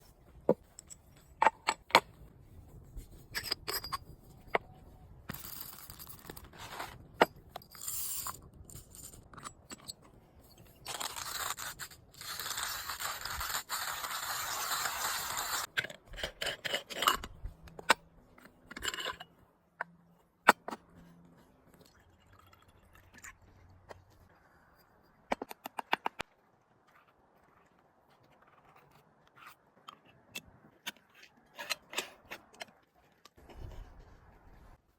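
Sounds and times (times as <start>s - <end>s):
coffee gear clicks and scrapes: 3.2s - 34.4s.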